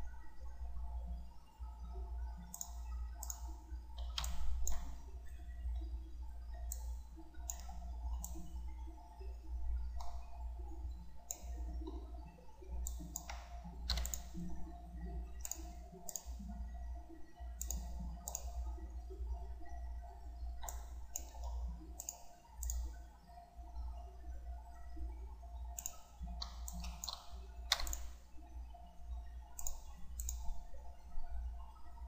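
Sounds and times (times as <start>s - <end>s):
steady low hum: 0.0s - 32.0s
computer mouse clicking: 2.4s - 5.2s, 6.7s - 8.6s, 9.9s - 10.4s, 11.2s - 12.1s, 12.7s - 14.7s, 15.4s - 16.6s, 17.6s - 18.8s, 20.5s - 23.0s, 25.7s - 28.2s, 29.5s - 30.6s.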